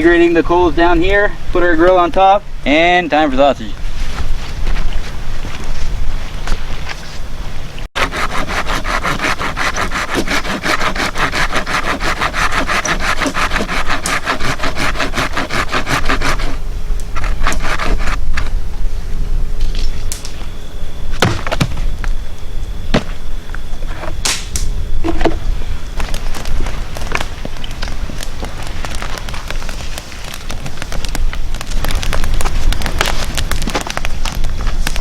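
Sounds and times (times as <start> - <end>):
hand saw cutting wood: 8.0 - 16.6, 17.2 - 18.2
sharp wood cracks: 8.0 - 18.5, 24.2 - 24.8, 26.0 - 35.0.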